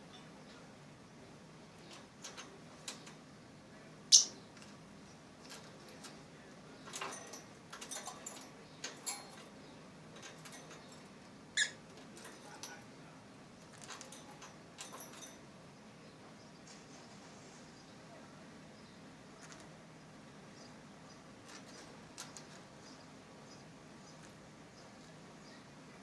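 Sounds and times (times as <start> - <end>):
lovebirds chirping: 2.8 - 7.2, 8.1 - 12.8, 15.7 - 26.0.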